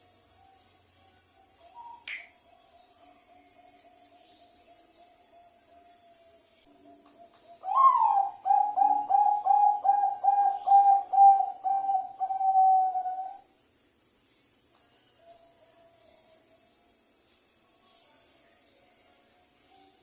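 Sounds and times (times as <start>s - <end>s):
insect trilling: 0.1s - 13.6s
dove cooing: 7.5s - 13.4s.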